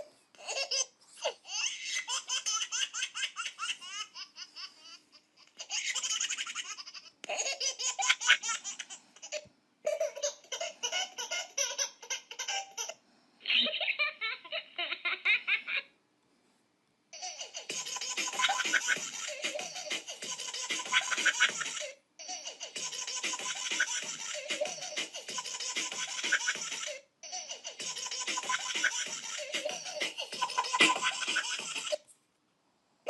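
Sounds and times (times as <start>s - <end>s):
baby laughing: 0.0s - 15.9s, 17.2s - 32.0s.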